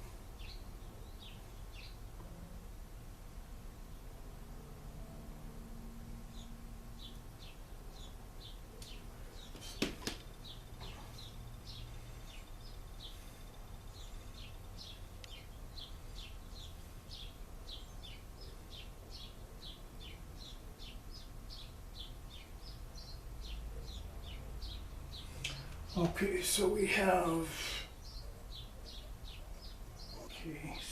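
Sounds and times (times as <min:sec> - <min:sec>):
small bird chirping: 0:00.0 - 0:02.1, 0:06.3 - 0:26.3, 0:27.1 - 0:30.9
low steady hum: 0:00.0 - 0:30.9
sharp knock: 0:09.8 - 0:10.2.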